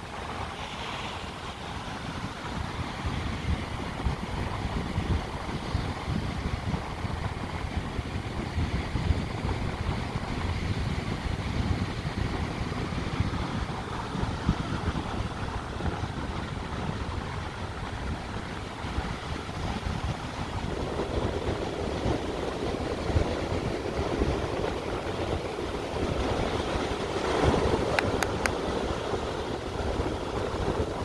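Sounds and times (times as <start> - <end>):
wind buffeting microphone: 0.0 - 31.0
sea waves washing in: 20.2 - 31.0.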